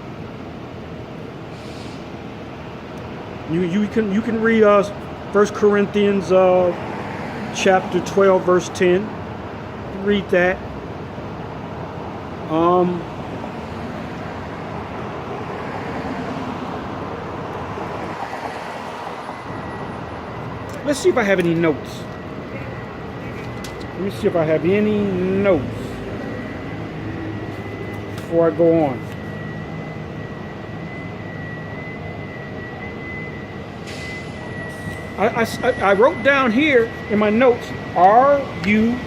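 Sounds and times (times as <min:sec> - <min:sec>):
road traffic rumble: 0:00.0 - 0:39.0
thin high whine: 0:19.2 - 0:39.0.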